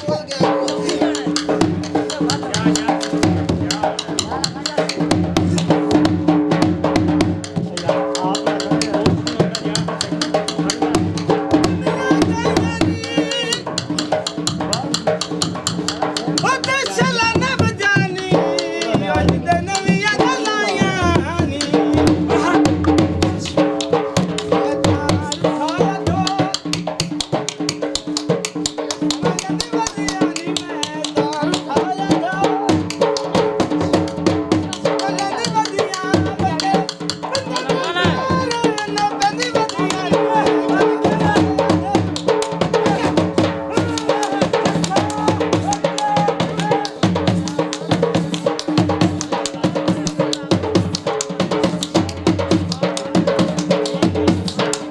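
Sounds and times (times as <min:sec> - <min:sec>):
fast dhol drumming: 0:00.0 - 0:54.9
pitched melody: 0:07.8 - 0:26.6.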